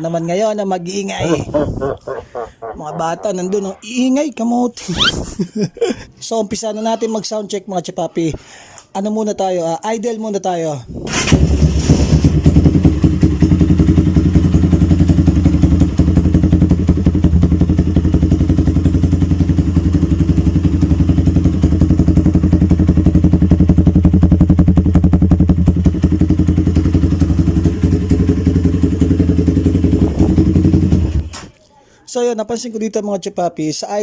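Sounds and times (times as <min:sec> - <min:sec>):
motorcycle idling: 0:11.4 - 0:31.4.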